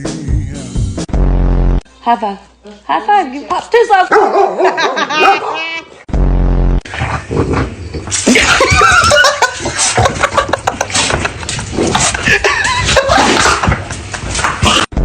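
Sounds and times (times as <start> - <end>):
person laughing hard: 4.6 - 6.0, 8.2 - 14.4.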